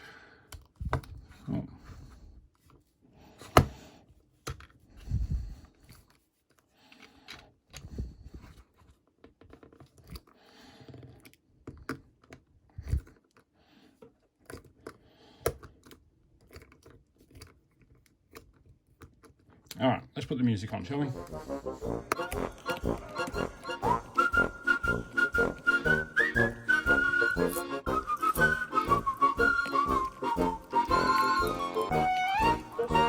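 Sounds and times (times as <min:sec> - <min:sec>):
metal parts clicking and tapping: 0:14.4 - 0:19.6.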